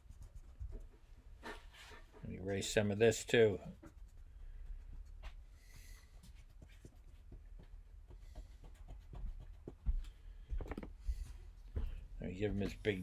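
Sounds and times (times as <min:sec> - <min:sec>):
pencil scratching on paper: 0:00.0 - 0:10.0.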